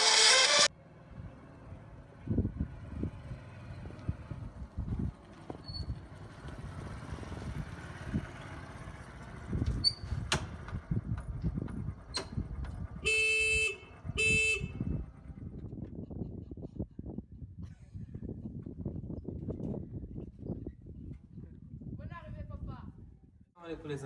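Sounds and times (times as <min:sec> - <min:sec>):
vehicle horn honking: 0:13.1 - 0:14.8.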